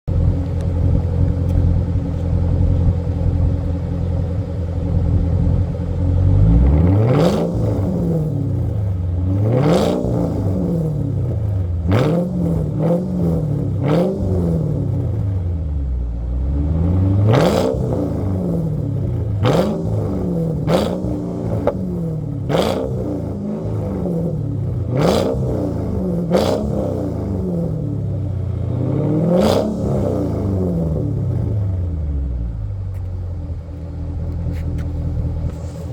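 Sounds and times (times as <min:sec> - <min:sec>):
car engine idling and revving: 0:00.0 - 0:35.9.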